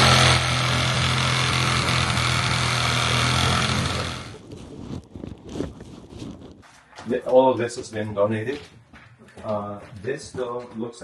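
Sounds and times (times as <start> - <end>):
engine humming: 0.0 - 4.4.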